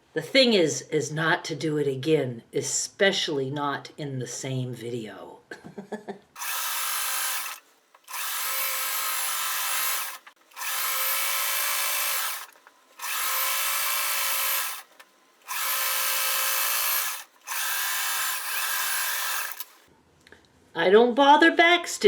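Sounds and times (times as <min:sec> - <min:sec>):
sewing machine stitching: 0:06.4 - 0:19.9.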